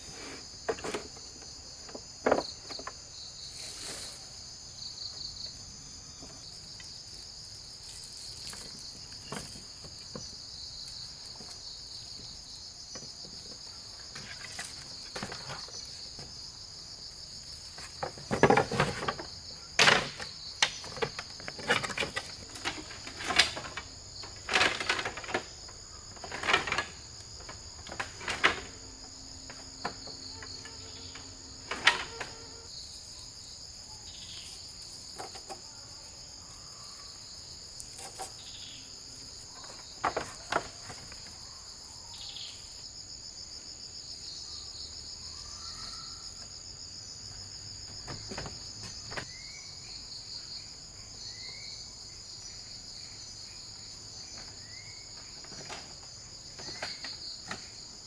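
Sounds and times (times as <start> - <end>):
crickets chirping: 0.0 - 58.0
knocks and clatters: 0.7 - 3.0, 17.7 - 32.7, 39.6 - 41.2.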